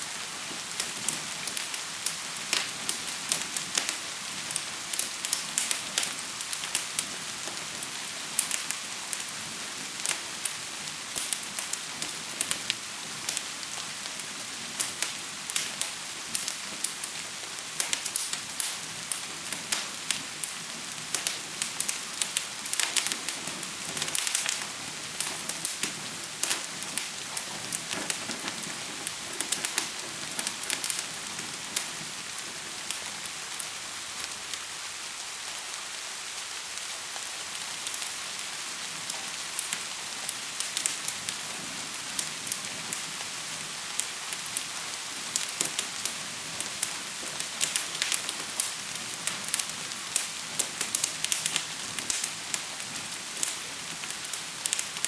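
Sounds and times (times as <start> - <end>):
fire crackling and popping: 0.0 - 55.0
gentle rain hissing: 0.0 - 55.0.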